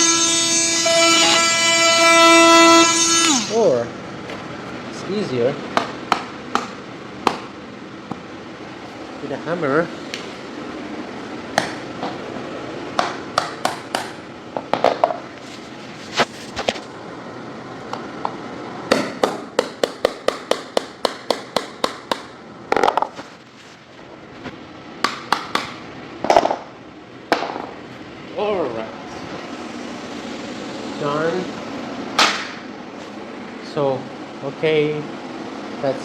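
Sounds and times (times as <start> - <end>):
hammer striking chisel: 13.0 - 14.2, 18.9 - 22.3.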